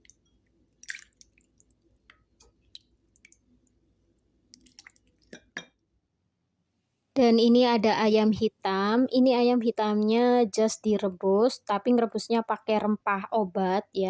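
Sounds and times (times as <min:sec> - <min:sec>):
liquid drips and splashes: 0:00.0 - 0:05.7.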